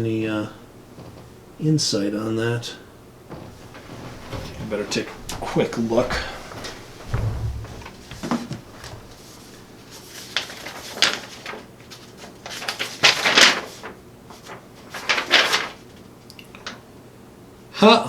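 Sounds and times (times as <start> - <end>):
paper rustling: 3.3 - 16.8.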